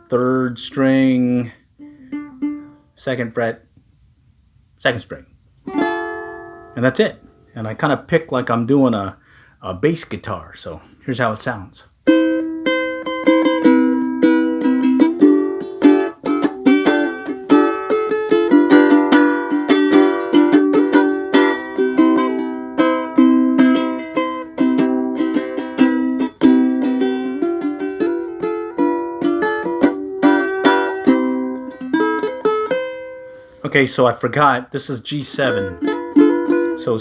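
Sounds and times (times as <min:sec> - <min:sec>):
ukulele strumming: 0:00.0 - 0:02.9, 0:05.6 - 0:08.2, 0:12.0 - 0:33.7, 0:35.1 - 0:37.0.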